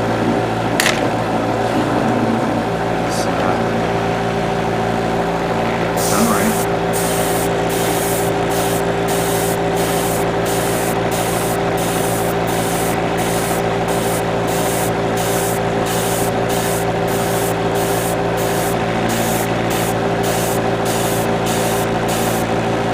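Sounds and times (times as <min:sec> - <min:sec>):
small compressor humming: 0:04.4 - 0:22.9
paint spray hissing: 0:06.0 - 0:22.5.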